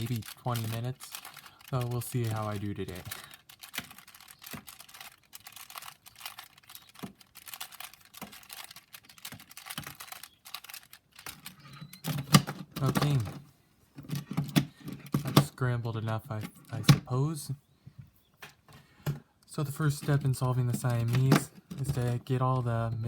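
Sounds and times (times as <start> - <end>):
puzzle cube layers clicking: 0.0 - 11.6.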